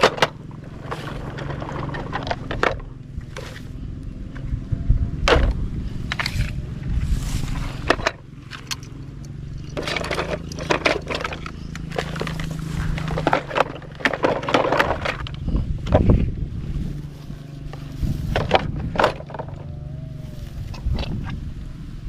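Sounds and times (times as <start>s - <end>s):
plastic toy vehicles knocking and clattering: 0.0s - 4.6s, 5.2s - 6.6s, 7.8s - 16.3s, 17.7s - 19.8s
low steady hum: 0.0s - 22.0s.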